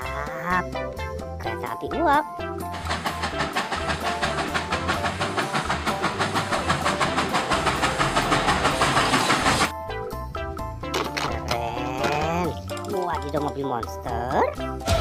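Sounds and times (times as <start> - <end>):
steam locomotive chuffing: 2.6 - 9.7.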